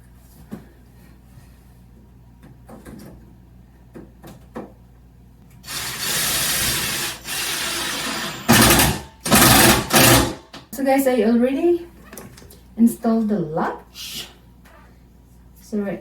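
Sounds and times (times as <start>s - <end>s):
cordless drill driving screws: 5.6s - 10.4s.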